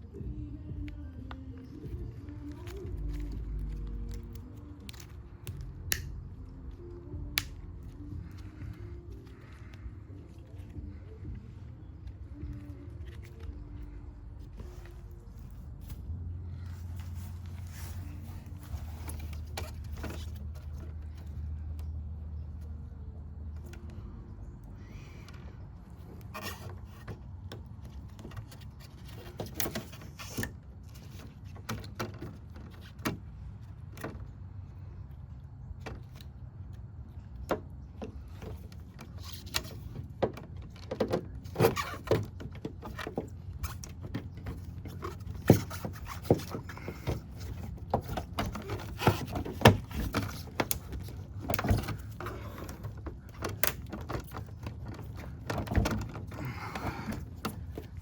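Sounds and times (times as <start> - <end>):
steady low hum: 0.0 - 29.4.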